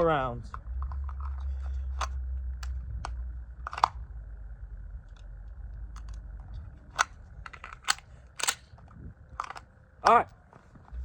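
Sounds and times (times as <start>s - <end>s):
low rumble: 0.0s - 10.0s, 10.6s - 11.0s
airsoft pistol clicks: 6.9s - 10.2s.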